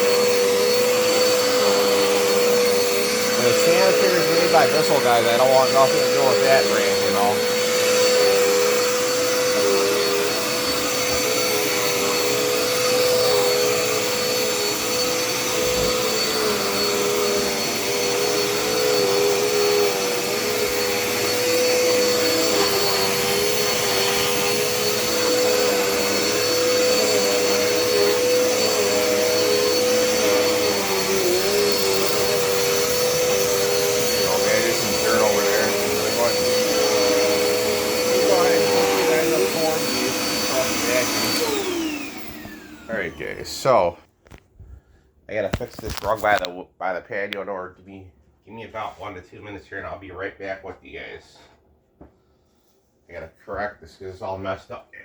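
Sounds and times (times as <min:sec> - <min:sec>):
vacuum cleaner running: 0:00.0 - 0:43.9.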